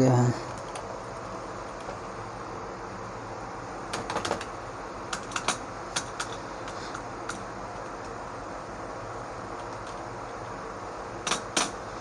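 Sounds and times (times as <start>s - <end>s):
steady low hum: 0.0s - 12.0s
computer keyboard clicking: 3.9s - 4.5s, 9.6s - 10.4s.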